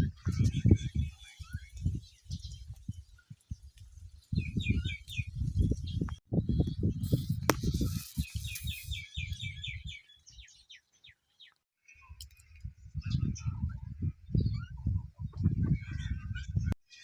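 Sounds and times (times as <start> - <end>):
bird chirping: 0.2 - 13.6
sharp click: 7.1 - 9.0.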